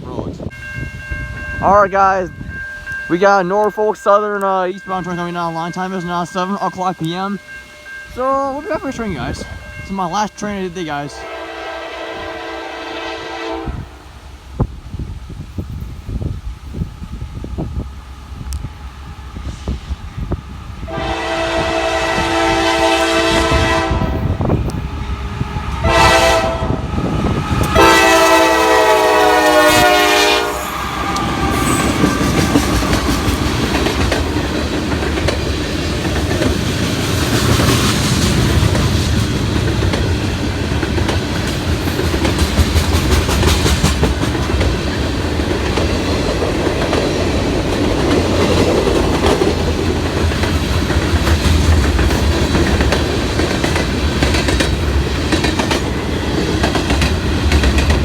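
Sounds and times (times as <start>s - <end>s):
train rumbling past: 0.0s - 58.0s
train horn blasts: 5.2s - 14.0s, 19.3s - 33.2s
wheels clicking over rail joints: 30.9s - 58.0s.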